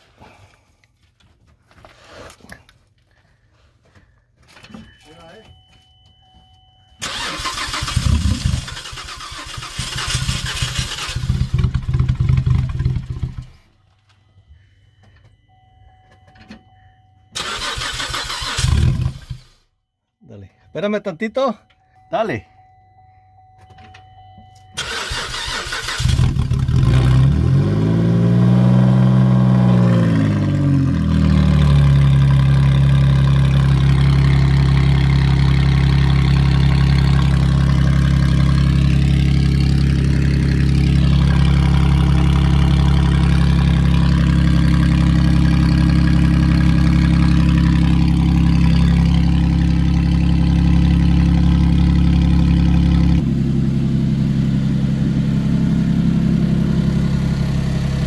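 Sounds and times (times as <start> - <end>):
car engine cranking: 7.0 - 13.6, 17.3 - 19.6, 23.6 - 58.0
car engine revving: 24.8 - 58.0.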